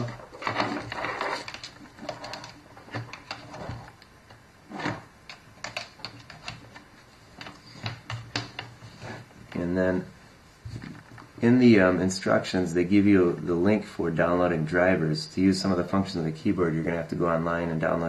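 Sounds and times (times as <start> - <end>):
plastic clatter: 0.0 - 4.1
rustling of handling: 0.0 - 9.8.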